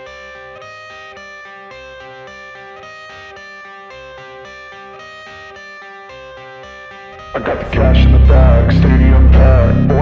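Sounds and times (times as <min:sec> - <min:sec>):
electric guitar riff with beat: 0:06.9 - 0:10.0.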